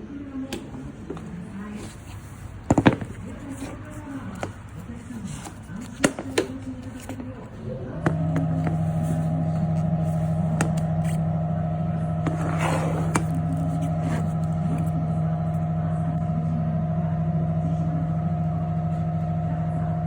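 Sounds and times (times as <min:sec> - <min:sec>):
car engine idling: 0:02.0 - 0:20.0
scraping rustle: 0:12.2 - 0:14.9.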